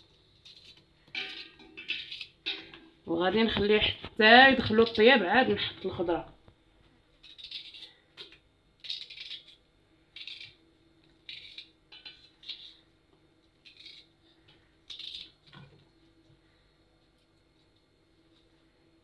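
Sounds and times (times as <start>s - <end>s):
knife cutting onion: 8.8s - 10.6s, 11.2s - 12.8s, 13.6s - 14.2s.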